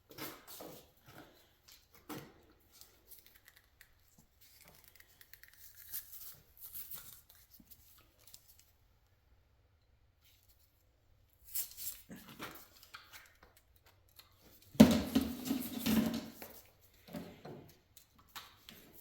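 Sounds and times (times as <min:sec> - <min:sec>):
wire clicks and rustles: 0:00.0 - 0:08.9.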